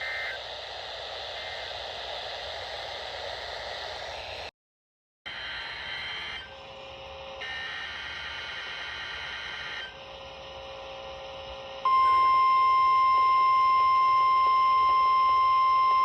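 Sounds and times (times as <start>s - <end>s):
loud steady alarm tone: 0.0s - 3.0s, 7.4s - 16.0s
faint steady tones: 0.0s - 4.3s, 5.3s - 16.0s
radio hiss: 0.0s - 4.5s, 7.4s - 9.9s.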